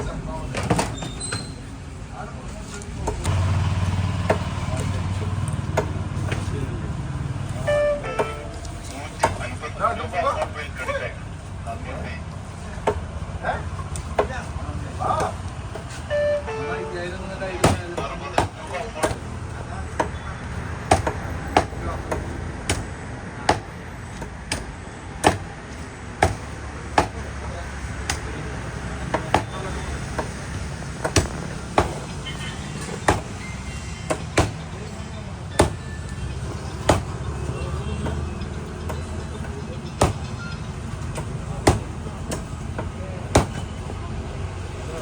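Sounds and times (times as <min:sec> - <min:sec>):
low rumble of traffic: 0:00.0 - 0:45.0
knife chopping through fish: 0:20.9 - 0:22.9, 0:24.3 - 0:25.5.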